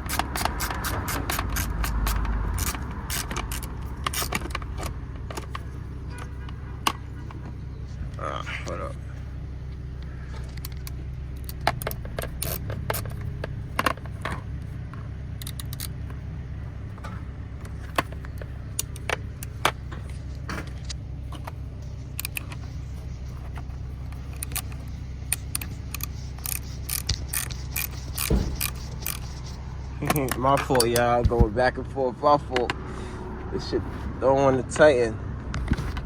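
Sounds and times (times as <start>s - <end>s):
ratchet clinking and clicking: 0.0s - 5.7s, 10.4s - 14.3s, 15.4s - 16.0s, 17.6s - 19.7s, 22.0s - 31.2s
steady low hum: 0.0s - 36.0s.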